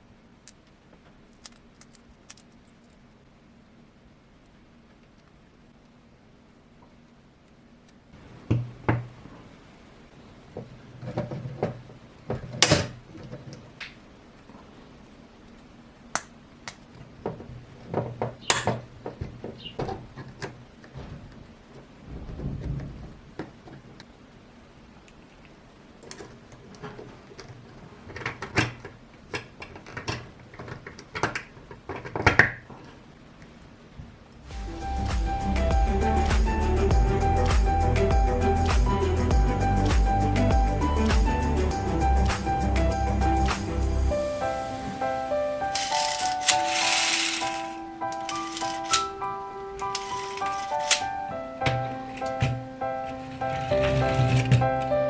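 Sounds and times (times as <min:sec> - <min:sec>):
plastic parts clacking together: 0:00.5 - 0:03.0, 0:25.1 - 0:33.0, 0:45.7 - 0:49.2, 0:49.8 - 0:54.9.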